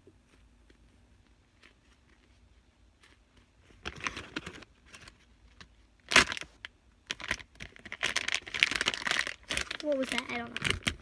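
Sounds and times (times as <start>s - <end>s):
plastic packaging crinkling: 6.0s - 11.0s.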